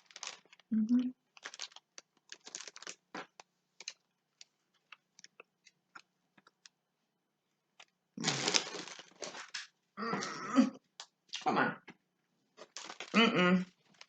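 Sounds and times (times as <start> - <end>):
candy wrapper crinkling: 0.0 - 6.8, 7.8 - 9.7, 12.6 - 14.0.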